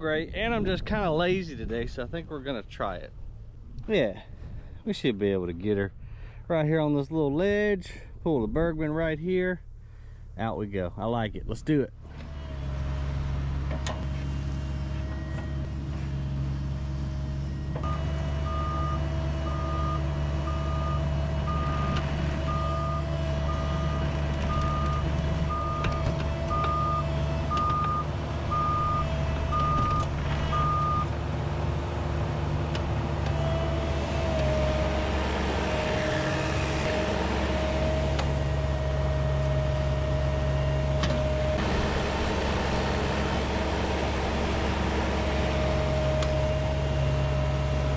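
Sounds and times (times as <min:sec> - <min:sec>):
diesel engine running: 0:00.0 - 0:47.9
back-up alarm beeping: 0:17.8 - 0:31.1.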